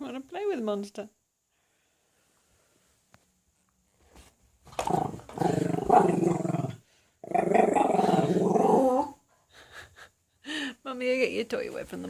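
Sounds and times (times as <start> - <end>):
low growls: 4.8 - 9.2.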